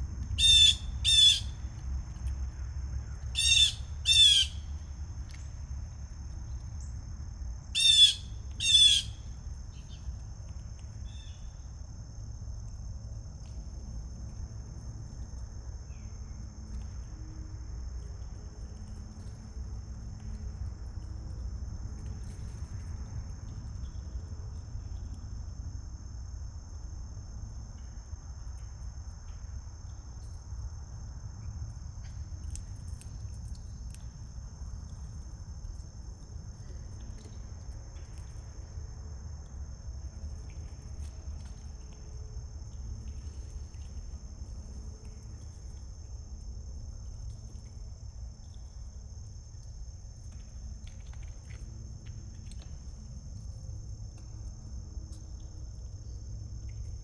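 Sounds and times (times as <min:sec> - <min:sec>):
high-pitched insect chorus: 0:00.4 - 0:02.3, 0:02.9 - 0:06.2, 0:06.8 - 0:17.2.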